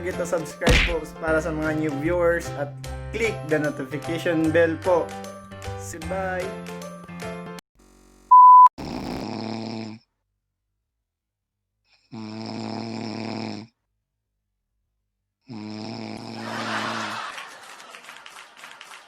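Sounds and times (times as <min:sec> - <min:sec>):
short loud beep: 0:08.3 - 0:08.7
man snoring: 0:08.8 - 0:10.1, 0:11.9 - 0:13.8, 0:15.4 - 0:17.2.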